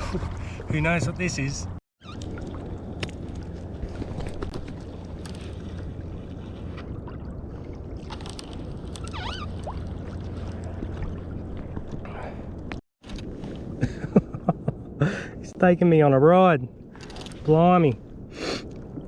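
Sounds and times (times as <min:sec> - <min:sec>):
water sloshing against kayak hull: 0:02.0 - 0:13.7
wavering squeak: 0:09.0 - 0:09.6.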